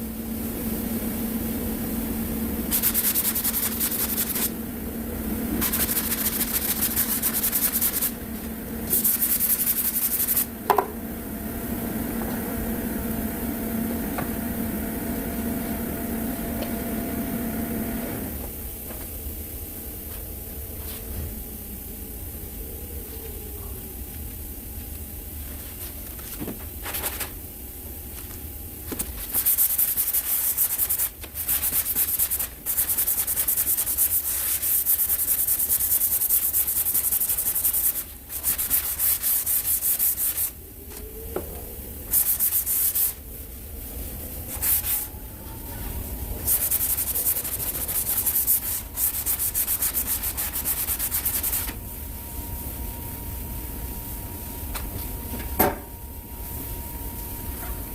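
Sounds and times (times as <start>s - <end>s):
sandpaper scratching back and forth: 2.7s - 4.5s, 5.6s - 8.2s, 8.9s - 10.5s, 29.2s - 40.6s, 42.1s - 43.2s, 46.4s - 51.7s.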